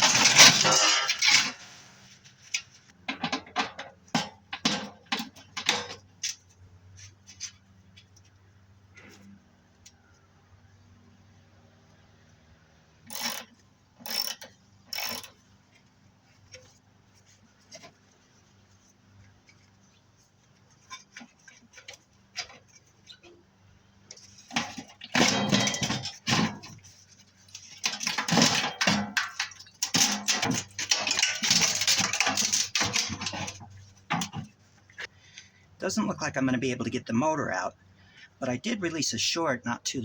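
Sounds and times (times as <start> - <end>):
hand tools clanking on metal: 0.0 - 1.8, 24.1 - 34.5.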